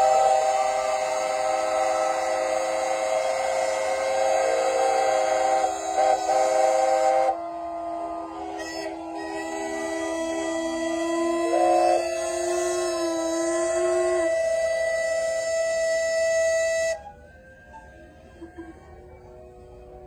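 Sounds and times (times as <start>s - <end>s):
steam whistles blowing: 0.0s - 18.7s
short whistle toots: 8.4s - 17.0s.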